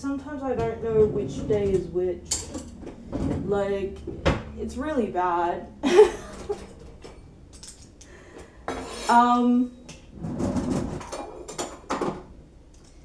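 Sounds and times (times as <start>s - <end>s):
dishes and cutlery clattering: 0.6s - 4.6s, 6.2s - 8.0s, 8.7s - 9.4s, 10.4s - 12.3s.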